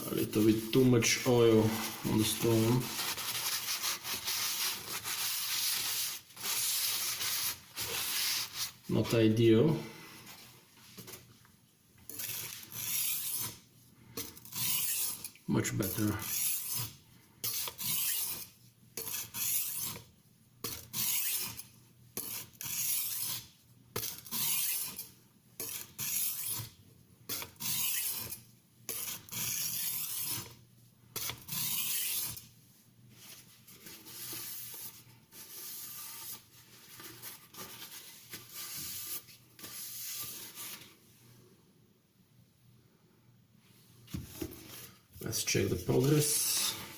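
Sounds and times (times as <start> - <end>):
knife scraping on oilstone: 16.2 - 26.7, 27.3 - 30.6, 31.2 - 32.5.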